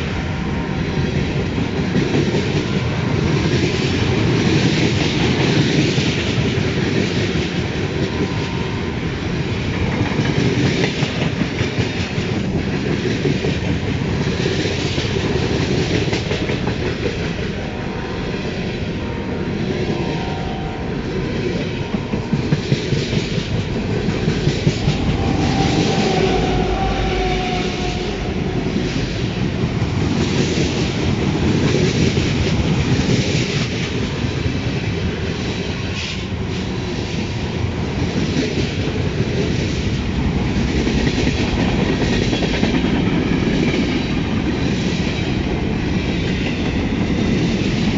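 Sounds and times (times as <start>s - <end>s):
train wheels clacking over rail joints: 9.5s - 17.7s, 21.7s - 47.9s
faint high tone: 17.6s - 22.3s.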